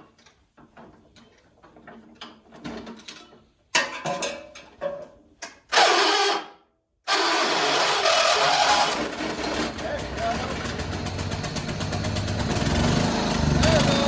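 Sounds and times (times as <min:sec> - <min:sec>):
starter motor cranking: 0:07.1 - 0:14.0
lawn tractor engine running: 0:07.3 - 0:14.0.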